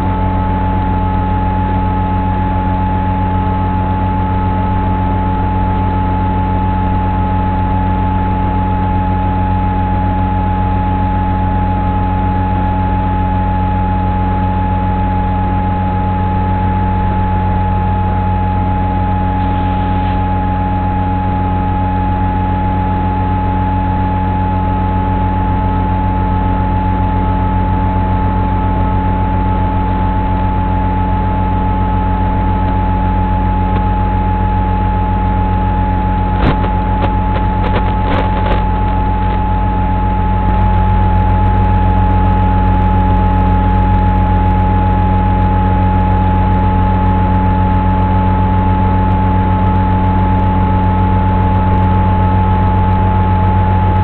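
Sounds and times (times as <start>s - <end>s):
steady loud hum with whine: 0.0s - 54.0s.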